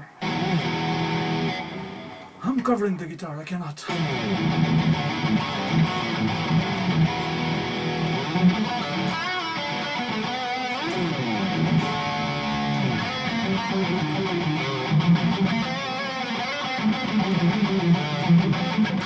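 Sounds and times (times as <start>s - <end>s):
electric guitar playing: 0.0s - 2.4s, 3.9s - 19.0s.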